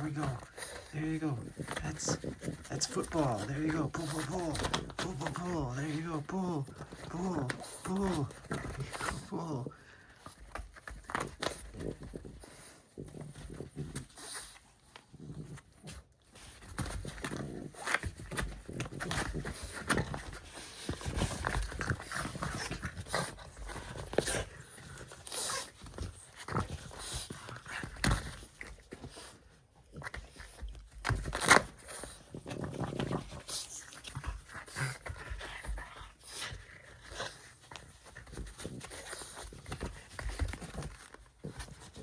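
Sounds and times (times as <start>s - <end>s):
dog sounds: 0.0s - 10.0s
dogs scuffling: 0.0s - 42.0s.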